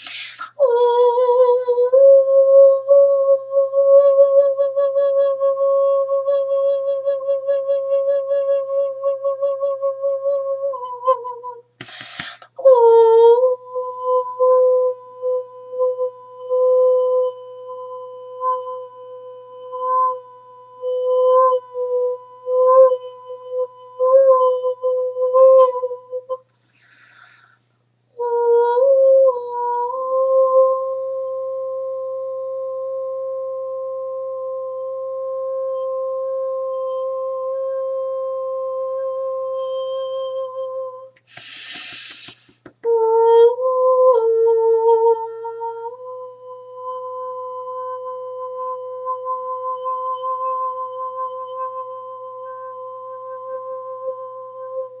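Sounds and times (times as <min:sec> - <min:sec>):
breathy hiss: 0:00.0 - 0:00.6, 0:11.8 - 0:12.6, 0:26.5 - 0:27.8, 0:41.2 - 0:42.7.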